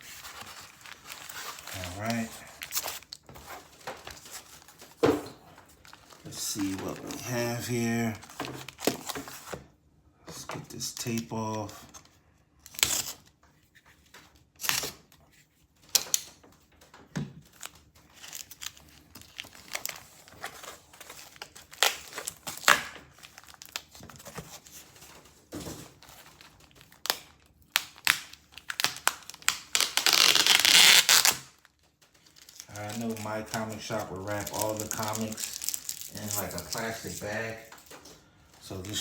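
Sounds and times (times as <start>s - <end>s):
packing tape peeling: 0.0s - 4.6s, 14.6s - 15.2s, 17.5s - 24.8s, 26.0s - 37.6s
package tearing and crinkling: 0.0s - 5.1s, 5.7s - 9.5s, 10.9s - 13.3s, 14.6s - 15.2s, 17.4s - 38.0s.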